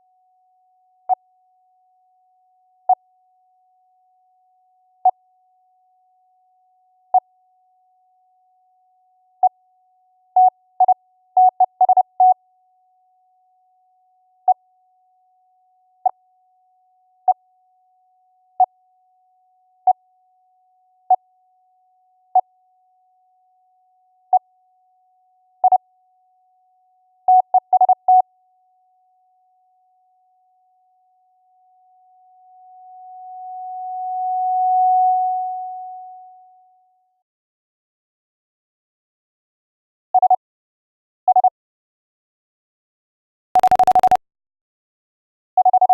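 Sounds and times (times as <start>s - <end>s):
morse code beeps: 43.6s - 44.2s, 45.6s - 45.9s.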